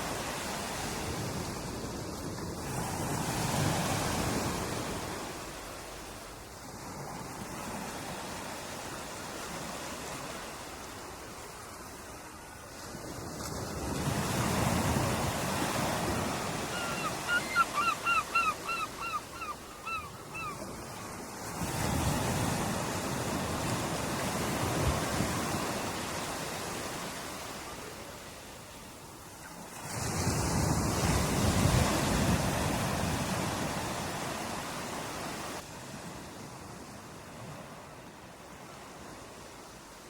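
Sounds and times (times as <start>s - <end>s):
waves breaking on shore: 0.0s - 40.0s
bird calling: 16.5s - 20.6s.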